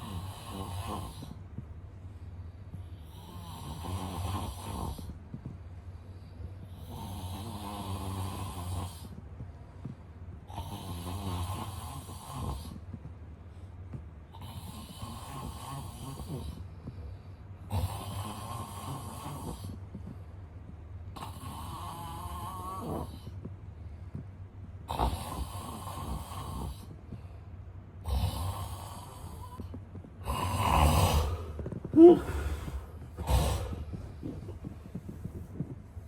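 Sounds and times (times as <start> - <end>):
man snoring: 0.0 - 1.4, 2.9 - 5.2, 6.7 - 9.2, 10.5 - 12.9, 14.4 - 16.7, 17.6 - 19.8, 21.2 - 23.3, 24.9 - 27.0, 28.0 - 34.6.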